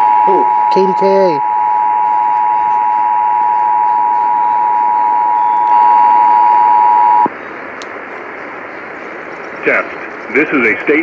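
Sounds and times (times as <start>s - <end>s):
radio hiss: 9.6s - 11.0s.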